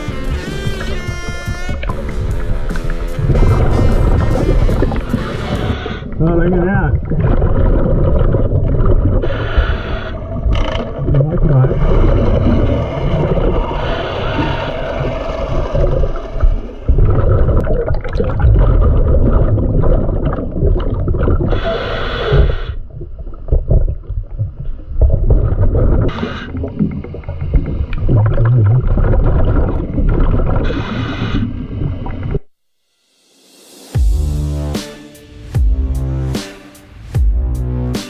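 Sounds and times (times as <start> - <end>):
bubbling exhaled air: 2.6 - 22.7
diver inhaling through regulator: 9.2 - 10.5, 11.7 - 17.1.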